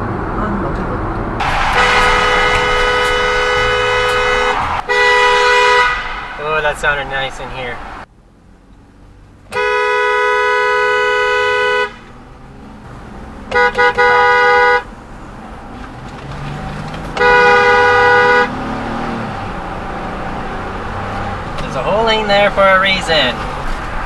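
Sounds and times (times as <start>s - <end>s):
traffic noise: 0.0s - 24.0s
two-tone car horn honking: 1.4s - 8.0s, 9.5s - 12.2s, 13.5s - 14.9s, 17.1s - 19.2s.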